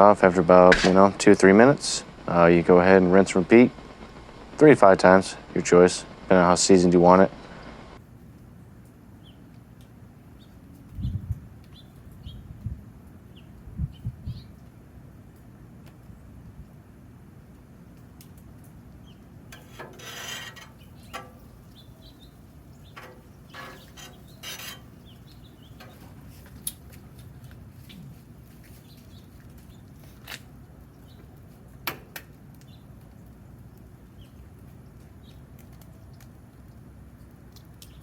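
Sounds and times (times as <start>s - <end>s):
gas burners rumbling: 0.0s - 8.0s, 19.0s - 35.7s
sharp clicks: 0.2s - 8.0s.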